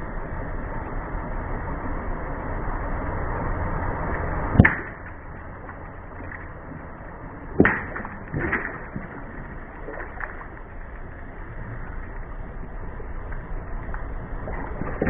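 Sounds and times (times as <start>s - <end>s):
low rumble: 0.0s - 15.0s
sharp crack: 4.6s - 6.9s, 7.5s - 11.1s.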